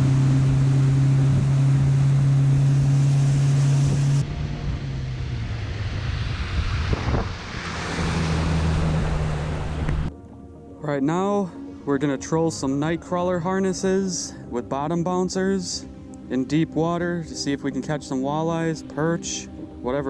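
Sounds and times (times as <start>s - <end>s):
engine low hum: 0.0s - 10.1s
engine running: 0.0s - 10.1s.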